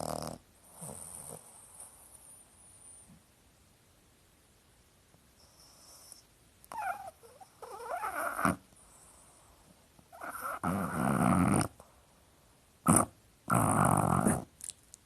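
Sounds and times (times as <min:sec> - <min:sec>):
dog snoring: 0:00.0 - 0:03.2, 0:05.4 - 0:11.9, 0:12.8 - 0:14.5.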